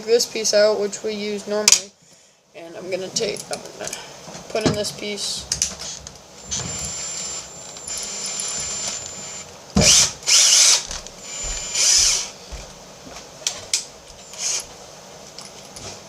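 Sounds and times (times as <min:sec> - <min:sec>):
electric screwdriver whine: 0:06.4 - 0:12.4, 0:14.1 - 0:14.8.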